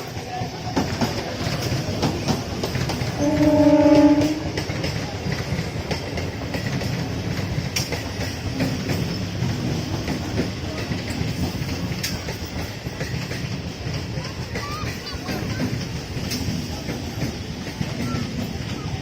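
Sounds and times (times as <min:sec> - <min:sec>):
train rumbling over rail joints: 0:00.0 - 0:19.0
train horn blast: 0:03.2 - 0:04.6.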